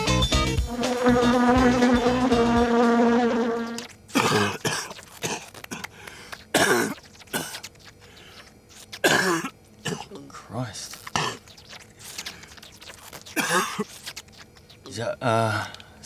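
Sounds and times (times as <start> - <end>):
fly buzzing: 0.0 - 9.6, 10.7 - 15.0
chesty coughing: 4.1 - 7.7, 8.9 - 10.3, 11.0 - 11.6, 13.3 - 13.9.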